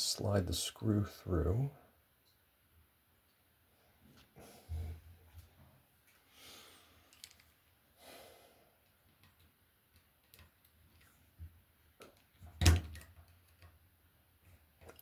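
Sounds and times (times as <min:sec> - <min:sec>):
soft breaths: 0:03.7 - 0:07.3, 0:07.9 - 0:09.0
small metal parts clicking: 0:07.1 - 0:07.6.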